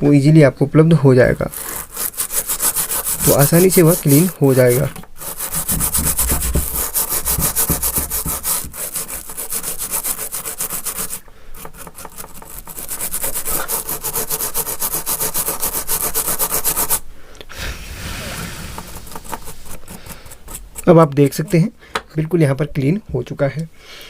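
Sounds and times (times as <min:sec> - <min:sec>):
toothbrush scrubbing circuit board: 0:01.3 - 0:17.0, 0:18.7 - 0:21.7.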